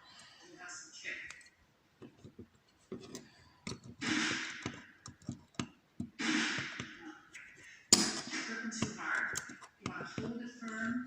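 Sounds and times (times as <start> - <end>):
metal tool clicks and taps: 4.6 - 6.1.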